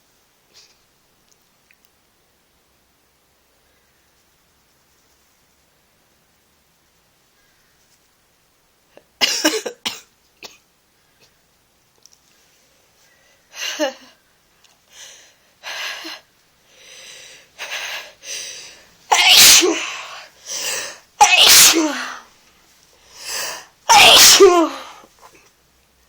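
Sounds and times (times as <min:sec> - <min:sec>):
sharp in-breaths: 0:14.9 - 0:22.3, 0:23.0 - 0:25.1
person sneezing: 0:17.6 - 0:22.3, 0:23.2 - 0:25.1.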